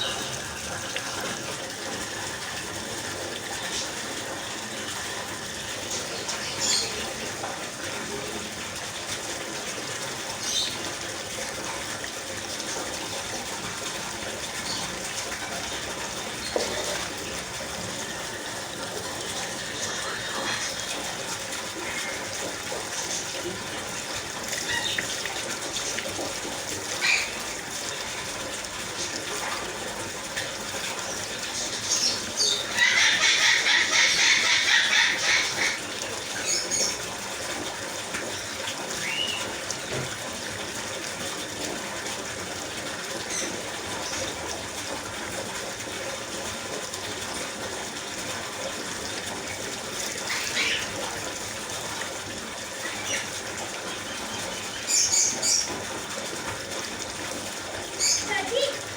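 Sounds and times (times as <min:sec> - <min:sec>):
water running: 0:00.0 - 0:58.9
parakeet calls: 0:24.6 - 0:25.1, 0:31.8 - 0:35.8, 0:50.3 - 0:50.9, 0:54.3 - 0:55.7, 0:58.0 - 0:58.7.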